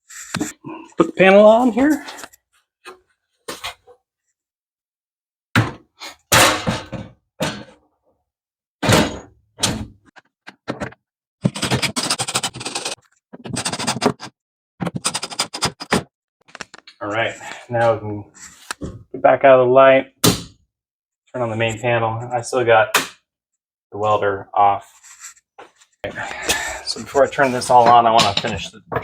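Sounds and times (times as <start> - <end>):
metal panel cover thunks and scrapes: 5.6 - 7.7, 8.8 - 10.0.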